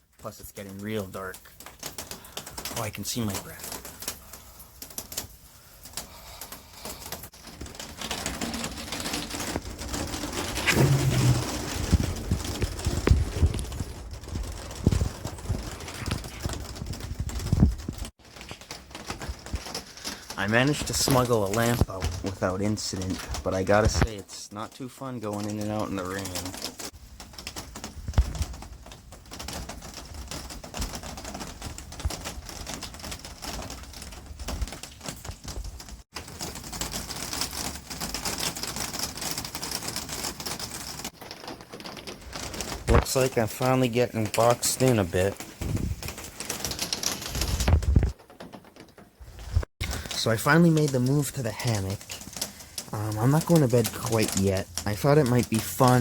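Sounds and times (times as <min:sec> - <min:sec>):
steady rain hiss: 0:00.2 - 0:14.6, 0:19.8 - 0:24.5, 0:42.7 - 0:47.5, 0:49.8 - 0:56.0
low thumps and knocks: 0:07.5 - 0:18.1.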